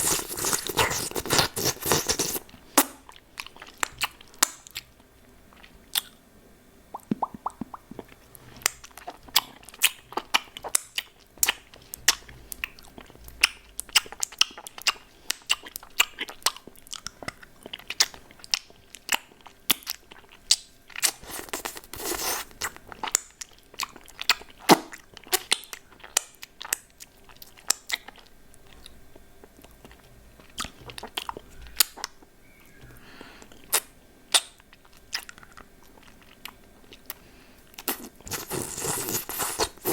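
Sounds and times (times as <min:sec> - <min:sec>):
lollipop being sucked and crunched: 0:00.0 - 0:02.4.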